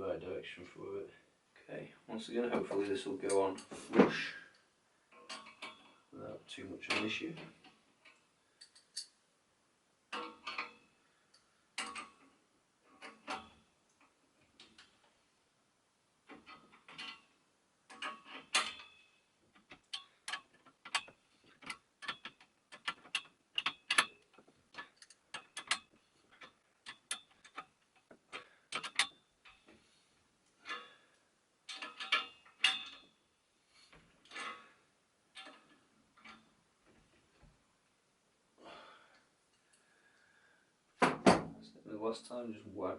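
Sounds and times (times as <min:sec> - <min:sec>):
spanner clicking on a nut: 0:28.7 - 0:29.2.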